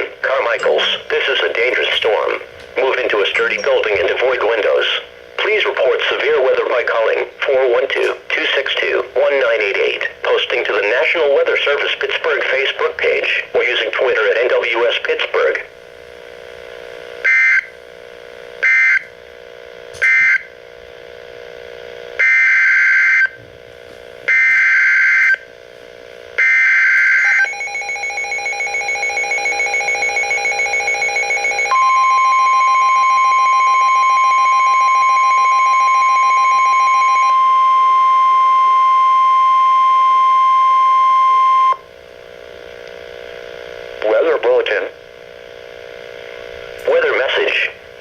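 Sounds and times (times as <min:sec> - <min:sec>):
steady warning alarm tone: 0:00.0 - 0:08.9, 0:17.2 - 0:17.8, 0:18.6 - 0:19.2, 0:20.0 - 0:20.5, 0:22.2 - 0:23.4, 0:24.3 - 0:25.5, 0:26.4 - 0:41.9
squawking data bursts: 0:02.9 - 0:04.3
pulsing electronic beep: 0:03.4 - 0:04.1.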